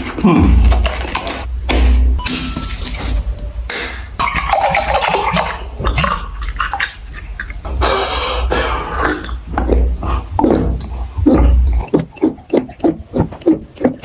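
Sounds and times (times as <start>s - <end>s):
crackling mouth noises: 0.0s - 1.5s, 5.8s - 14.0s
wet chewing: 0.0s - 1.5s, 2.3s - 14.0s.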